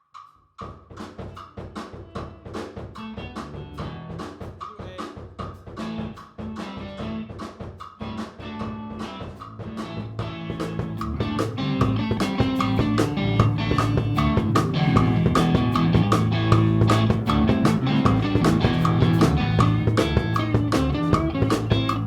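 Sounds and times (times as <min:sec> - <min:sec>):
drum kit groove: 0:00.0 - 0:22.0
live band jam: 0:01.0 - 0:22.0
low held notes: 0:09.9 - 0:22.0.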